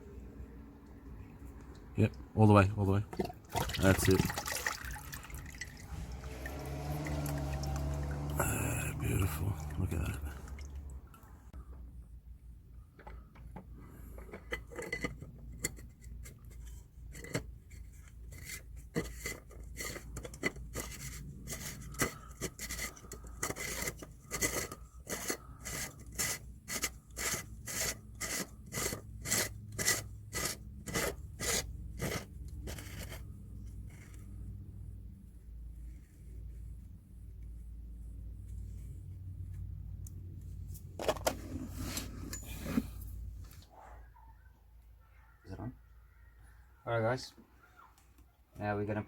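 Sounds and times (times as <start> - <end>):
rubbing or scraping strokes: 16.3 - 34.5, 40.6 - 44.0.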